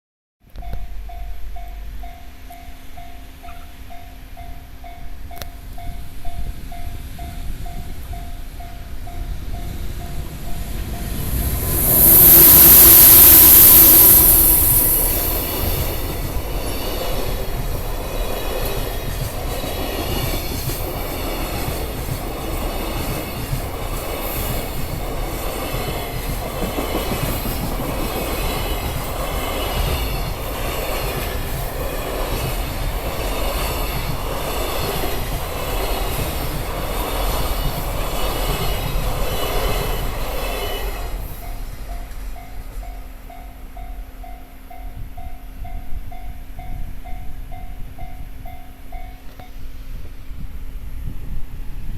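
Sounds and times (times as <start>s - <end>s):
train wheels clacking and squealing: 3.3s - 4.0s, 5.4s - 45.8s
loud hissing rush: 9.7s - 41.9s.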